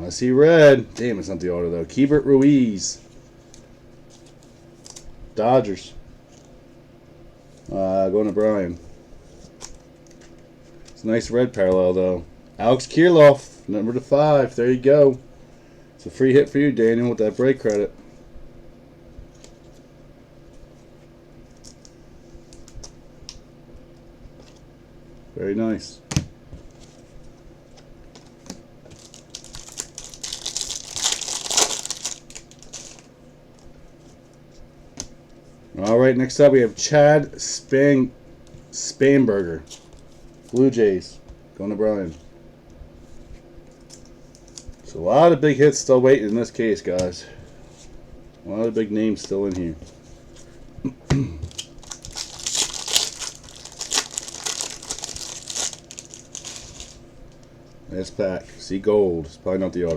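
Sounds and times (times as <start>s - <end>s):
card packaging crinkling: 28.2s - 33.1s, 43.8s - 44.9s, 51.5s - 57.4s.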